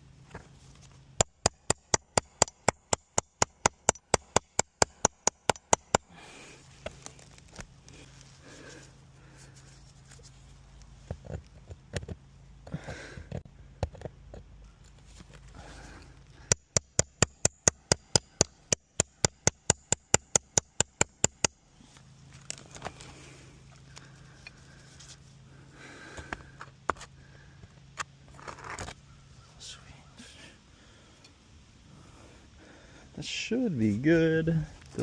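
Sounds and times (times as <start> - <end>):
rapid hammer tapping on nails: 1.2 - 6.2, 16.5 - 21.6
knocks and scrapes of roofing work: 28.0 - 29.0.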